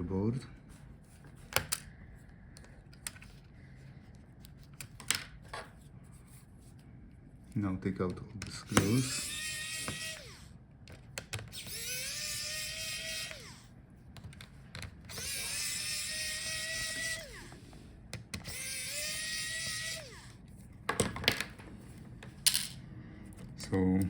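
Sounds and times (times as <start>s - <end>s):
electric screwdriver whirring: 8.6s - 10.6s, 11.5s - 13.7s, 15.0s - 20.4s.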